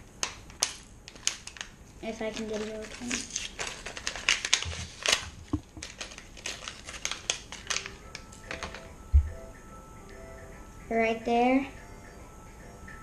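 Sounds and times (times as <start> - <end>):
plastic packaging crinkling: 0.2 - 8.9.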